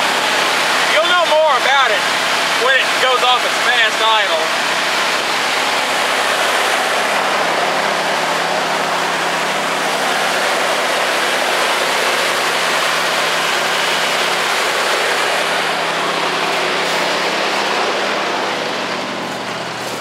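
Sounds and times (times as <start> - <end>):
truck engine fast idle: 0.0 - 20.0.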